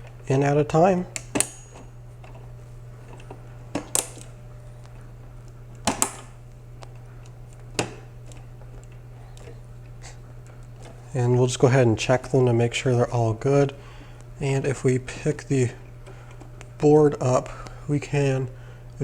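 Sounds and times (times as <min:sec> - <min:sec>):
low steady hum: 0:00.0 - 0:19.0.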